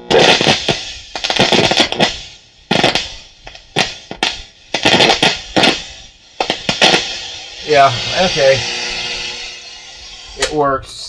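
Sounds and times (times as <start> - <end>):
music from radio loudspeaker: 0.0 - 2.1, 6.4 - 11.0
drum-like hits: 0.0 - 9.5.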